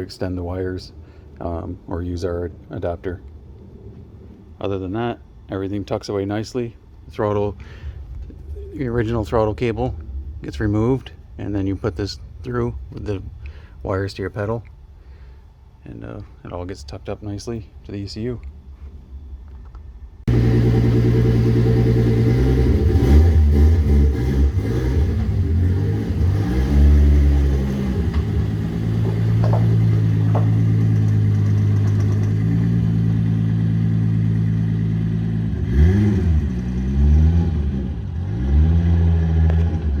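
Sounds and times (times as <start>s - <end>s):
car engine idling and revving: 20.3s - 40.0s.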